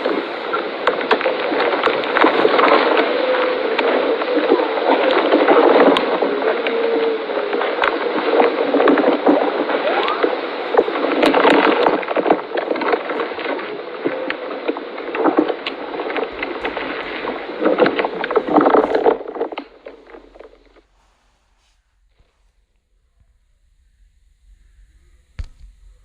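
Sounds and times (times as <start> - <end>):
camel chewing and crunching: 0.0 - 3.2, 8.3 - 20.8.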